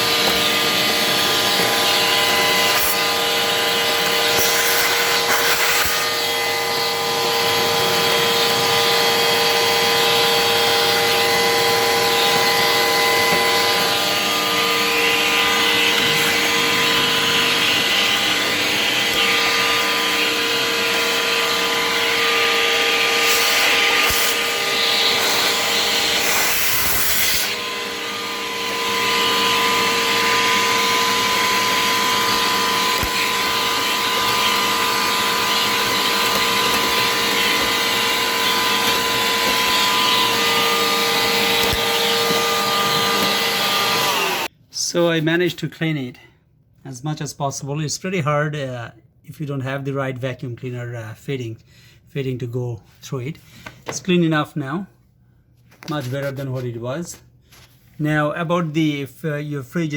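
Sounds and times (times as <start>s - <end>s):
vacuum cleaner running: 0.0s - 44.5s.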